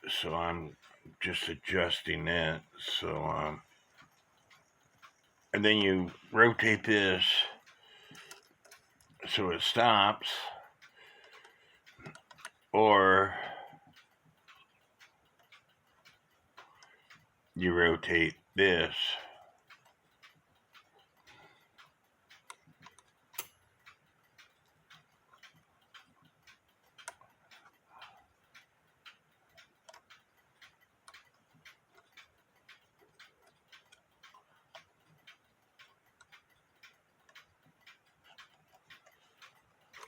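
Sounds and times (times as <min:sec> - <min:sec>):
alarm clock ticking: 0:00.0 - 0:40.0
mechanism clicks: 0:00.7 - 0:17.6, 0:18.3 - 0:40.0.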